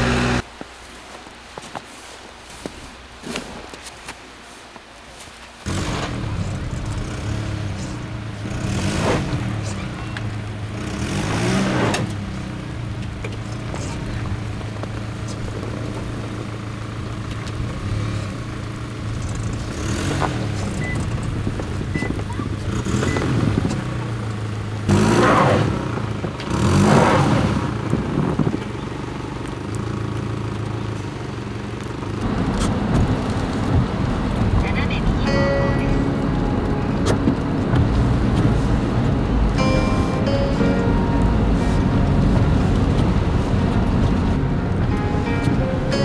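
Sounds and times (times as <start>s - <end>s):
vehicle engine humming: 0.0s - 46.0s.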